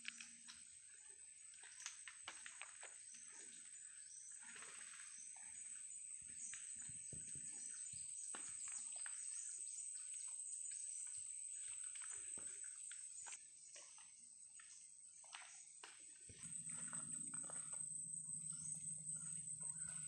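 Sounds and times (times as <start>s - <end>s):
insects droning: 0.0s - 13.4s, 16.3s - 20.0s
birds chirping: 16.4s - 20.0s.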